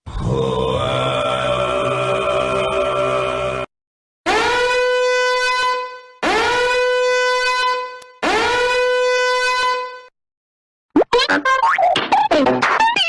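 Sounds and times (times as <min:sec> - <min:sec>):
loud buzzy horn blasts: 0:04.3 - 0:10.1.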